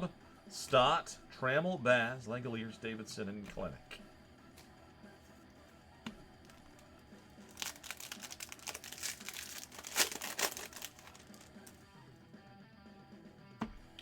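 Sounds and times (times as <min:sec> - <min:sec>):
wrapper tearing and crinkling: 0:06.4 - 0:11.8.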